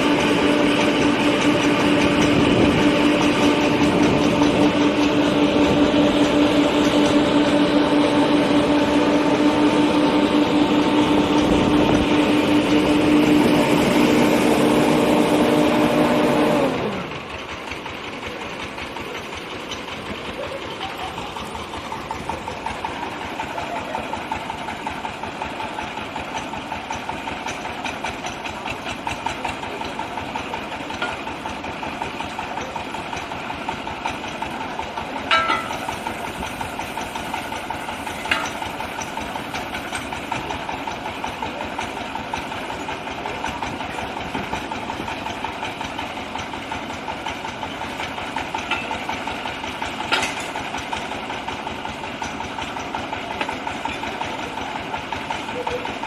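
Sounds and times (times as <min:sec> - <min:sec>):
drilling rig pulsing: 0:00.0 - 0:56.0
sharp metal clanks: 0:35.2 - 0:36.1, 0:38.0 - 0:39.2.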